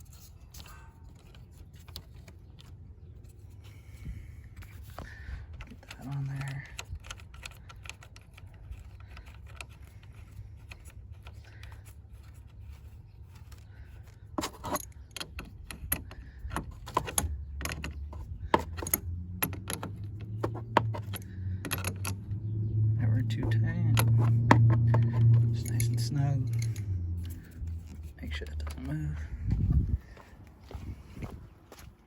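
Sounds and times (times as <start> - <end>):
hand tool clinking on metal: 25.2 - 27.4.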